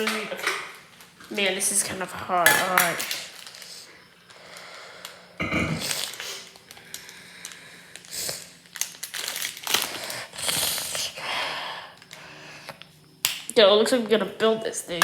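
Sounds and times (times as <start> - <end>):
plastic crinkling and rustling: 2.6 - 3.9, 5.8 - 11.0.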